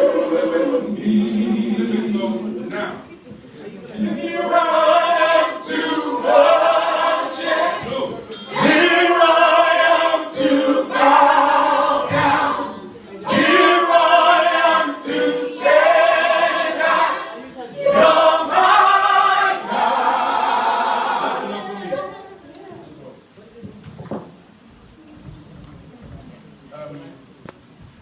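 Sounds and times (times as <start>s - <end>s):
choir singing a cappella: 0.0s - 3.2s, 3.9s - 22.2s.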